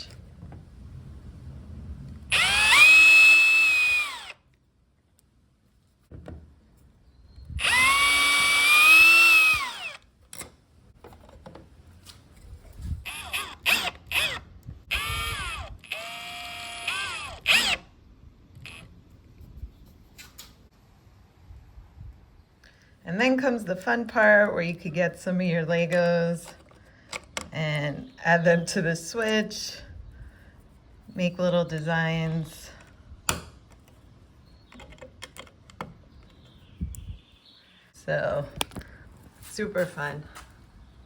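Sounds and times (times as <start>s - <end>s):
power screwdriver motor: 2.3s - 4.4s, 7.6s - 10.1s, 13.1s - 17.9s, 18.6s - 18.9s.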